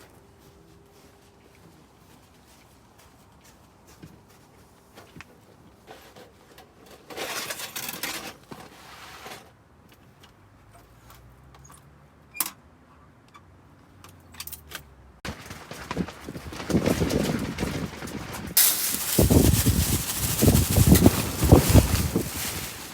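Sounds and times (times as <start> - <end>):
rustling and clinking handling: 15.3 - 22.9
gusty rush: 18.6 - 22.9.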